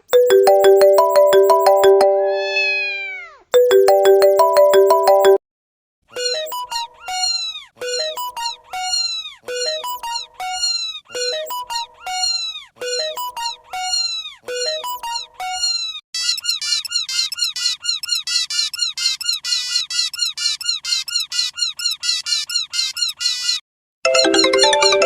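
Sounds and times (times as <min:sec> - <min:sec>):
cluster of electronic tones: 0:00.1 - 0:02.9, 0:03.6 - 0:05.4
electronic chirps rising and falling: 0:00.1 - 0:03.0, 0:03.6 - 0:05.4.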